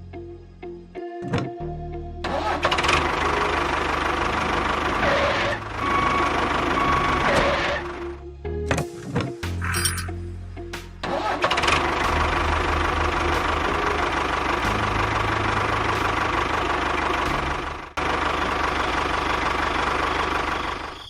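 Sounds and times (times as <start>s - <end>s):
tractor engine running: 2.2s - 8.2s, 11.0s - 21.0s.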